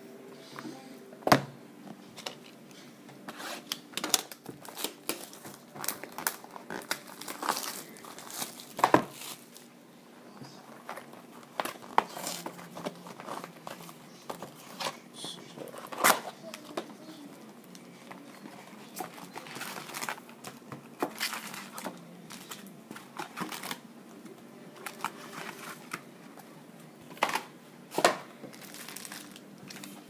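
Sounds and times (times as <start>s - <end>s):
plastic wrapping crinkling and tearing: 3.6s - 9.7s, 15.6s - 23.8s, 24.8s - 26.0s, 28.5s - 30.0s.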